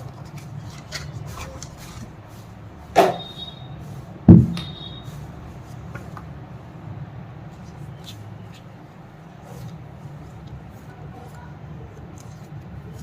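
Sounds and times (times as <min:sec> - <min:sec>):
objects knocking: 0:04.3 - 0:04.8.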